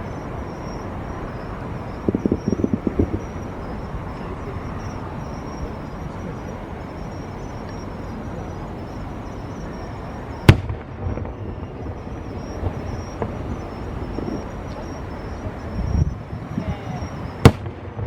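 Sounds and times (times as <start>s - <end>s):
outdoor background hum: 0.0s - 18.0s
firework bang: 2.0s - 3.3s, 10.4s - 15.5s, 16.6s - 18.0s.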